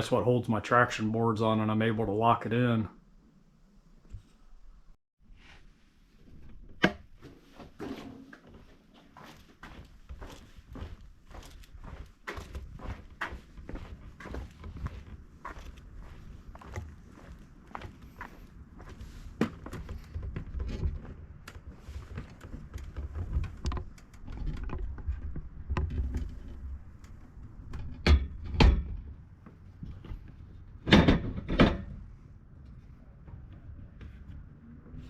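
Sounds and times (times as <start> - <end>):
knocks and clunks: 29.8 - 32.0.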